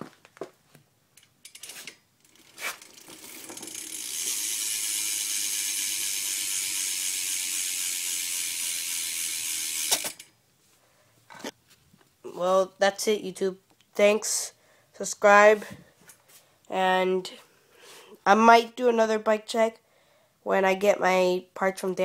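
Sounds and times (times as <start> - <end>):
bike hub ratcheting: 1.2 - 10.3.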